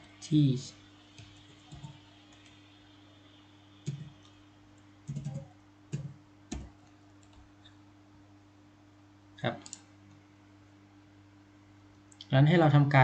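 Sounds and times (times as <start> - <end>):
faint steady hum: 0.0 - 13.0
keyboard keystrokes: 5.1 - 7.4.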